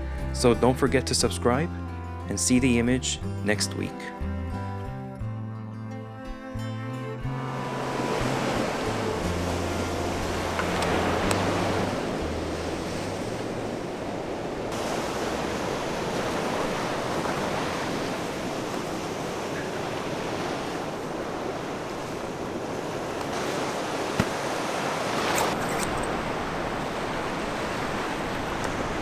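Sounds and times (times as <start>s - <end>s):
wind: 6.2s - 29.0s
waves breaking: 7.4s - 29.0s.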